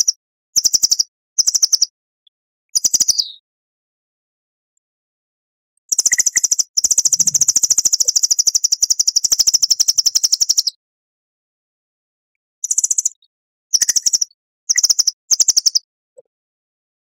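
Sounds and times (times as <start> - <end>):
songbird trilling: 5.9 - 10.8.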